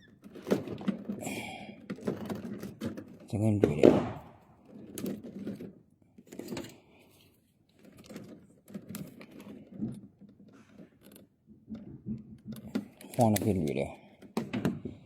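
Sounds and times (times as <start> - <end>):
clicks and knocks handling wiring: 7.6 - 15.0.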